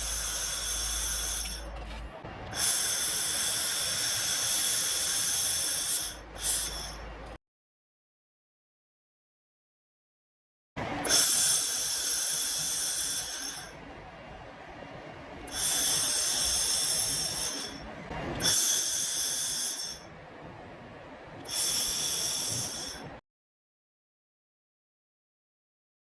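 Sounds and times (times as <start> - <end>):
laser welder hissing: 0.0 - 1.8, 2.5 - 7.4, 10.8 - 13.8, 15.4 - 20.2, 21.4 - 23.2
steady machine noise: 0.0 - 7.4, 10.8 - 23.2.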